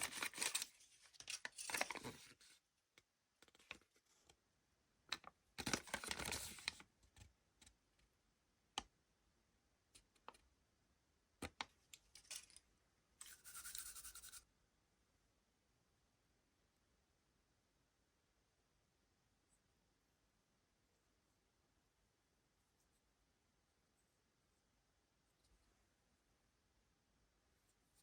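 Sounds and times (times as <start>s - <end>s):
wrapper crinkling: 0.0s - 2.2s.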